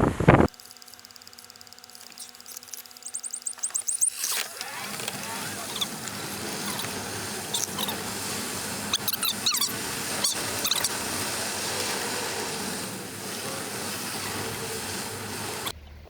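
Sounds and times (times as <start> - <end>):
wind noise: 0.0 - 0.5
short high squeaks: 0.5 - 15.7.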